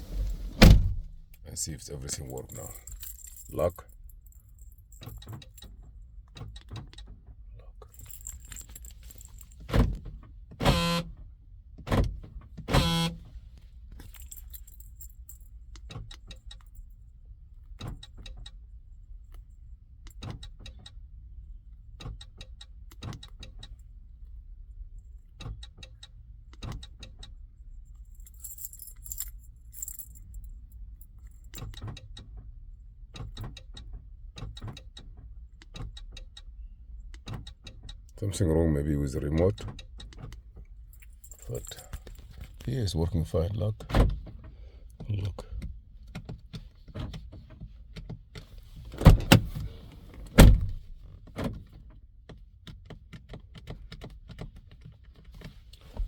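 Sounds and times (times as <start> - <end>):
power door locks clicking: 0.0 - 1.4, 49.0 - 50.9
keys jangling on key ring: 1.6 - 5.7, 7.8 - 9.8, 14.0 - 16.8, 28.0 - 31.8, 40.8 - 43.2.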